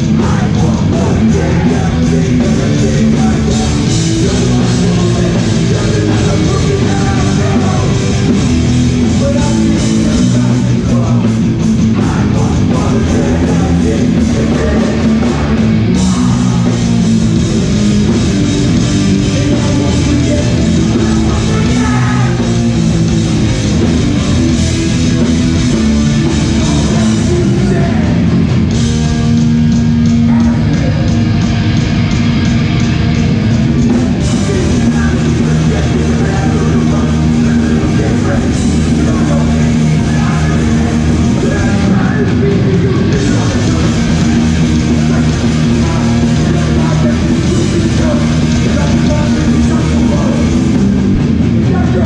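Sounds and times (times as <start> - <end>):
bass guitar: 0.0 - 52.0
distorted electric guitars: 0.0 - 52.0
drums: 0.0 - 52.0
shouted vocals: 19.3 - 22.8.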